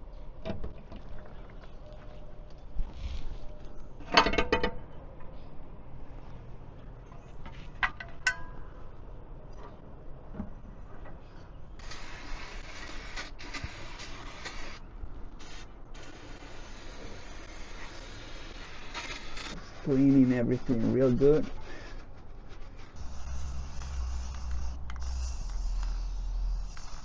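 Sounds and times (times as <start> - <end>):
aerosol spray hissing: 15.4 - 20.2, 22.9 - 27.0.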